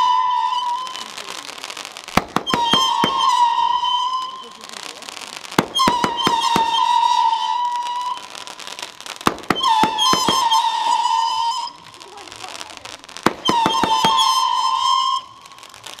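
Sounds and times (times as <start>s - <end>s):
firework pops: 0.0s - 16.0s
whistling fireworks: 0.0s - 16.0s.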